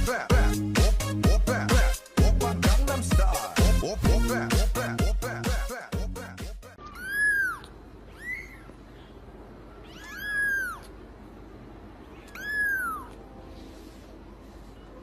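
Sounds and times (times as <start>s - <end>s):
cat meowing: 6.8s - 8.8s, 9.7s - 11.0s, 12.1s - 13.3s.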